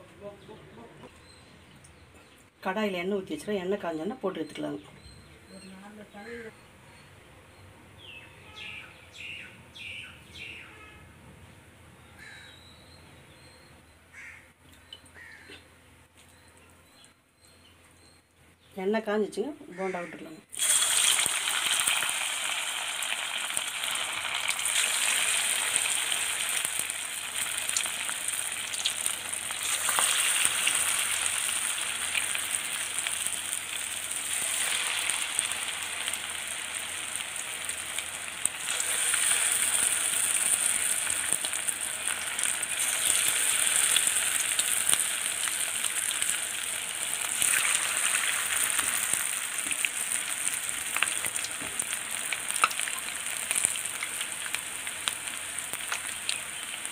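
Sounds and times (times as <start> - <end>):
food sizzling in hot oil: 20.5 - 56.9.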